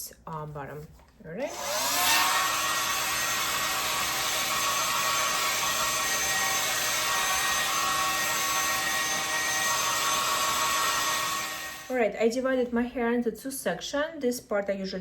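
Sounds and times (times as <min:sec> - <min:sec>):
hair dryer running: 0:01.4 - 0:12.0.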